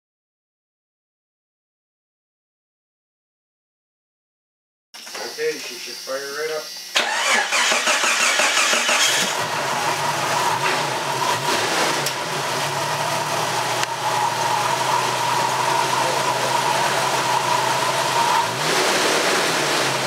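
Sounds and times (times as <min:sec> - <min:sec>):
car engine idling: 0:07.0 - 0:20.0
high belt whine: 0:12.4 - 0:18.6.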